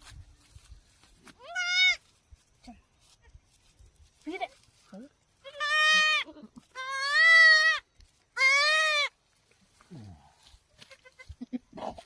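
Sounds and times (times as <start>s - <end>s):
goat bleating: 1.4s - 2.0s, 5.4s - 7.8s, 8.4s - 9.1s, 10.8s - 12.0s.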